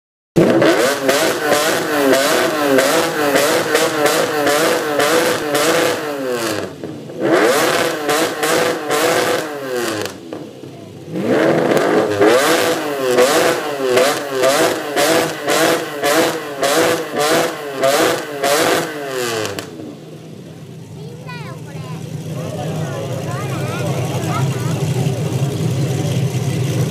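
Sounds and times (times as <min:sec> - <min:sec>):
car engines revving: 0:00.4 - 0:26.9.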